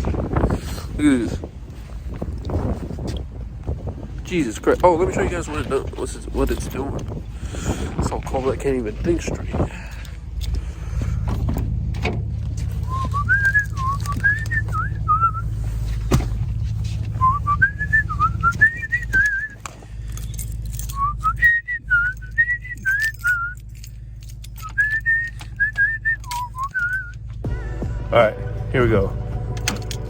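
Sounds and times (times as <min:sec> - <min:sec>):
steady low rumble: 0:00.0 - 0:30.0
person whistling a tune: 0:12.8 - 0:15.5, 0:17.2 - 0:19.6, 0:20.9 - 0:23.6, 0:24.6 - 0:27.2.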